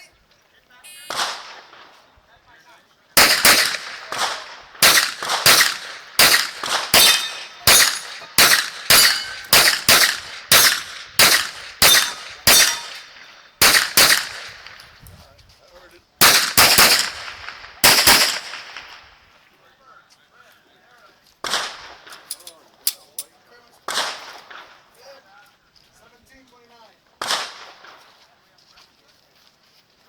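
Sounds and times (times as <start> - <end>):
pistol shots: 0.9 - 2.0, 3.2 - 14.8, 16.2 - 19.1, 21.4 - 22.3, 23.8 - 24.8, 27.2 - 28.0.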